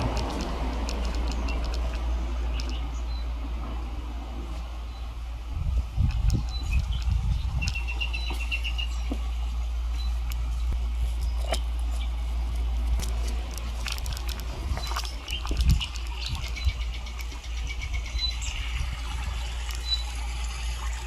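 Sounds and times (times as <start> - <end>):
steady low hum: 0.0 - 21.0
recorded birdsong through speaker: 1.0 - 3.4, 6.1 - 12.8, 13.6 - 20.8.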